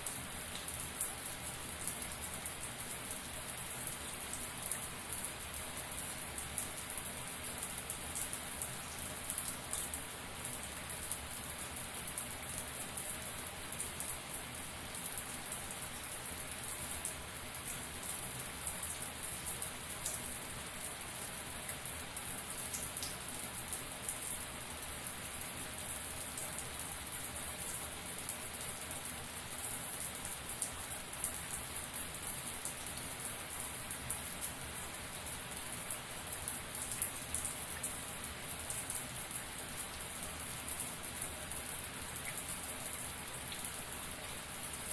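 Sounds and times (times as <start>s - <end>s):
shower water running: 0.0s - 44.9s.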